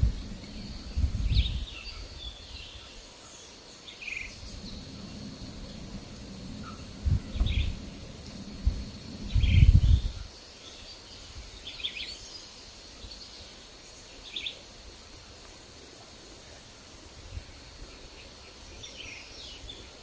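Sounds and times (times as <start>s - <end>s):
wind buffeting microphone: 0.0s - 2.9s, 4.2s - 10.4s
birds chirping: 0.0s - 14.6s.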